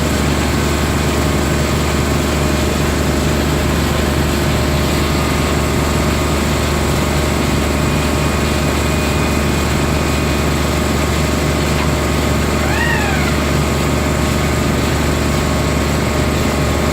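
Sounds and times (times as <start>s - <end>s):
machine mechanical hum: 0.0s - 16.9s
short squeal: 11.7s - 13.6s.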